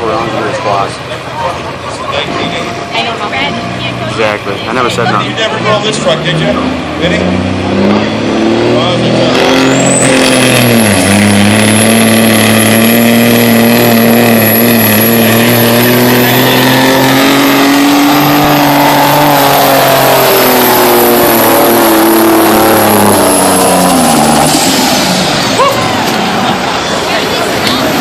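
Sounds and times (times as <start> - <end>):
diesel engine running hard: 0.0 - 28.0.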